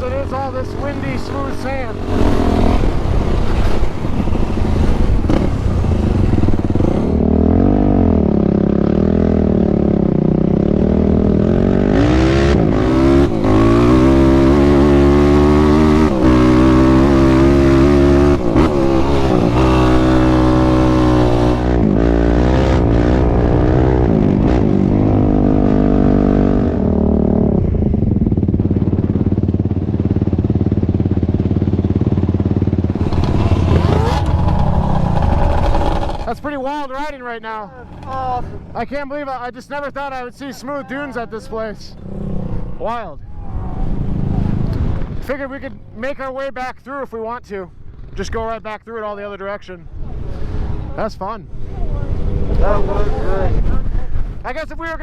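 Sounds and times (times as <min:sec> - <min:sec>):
quad engine revving: 0:00.0 - 0:36.4.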